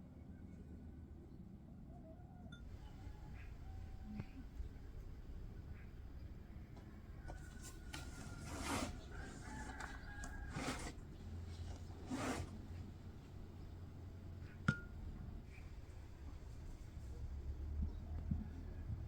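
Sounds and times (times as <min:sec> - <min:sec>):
rooster crowing: 0:02.7 - 0:04.2, 0:07.1 - 0:11.0.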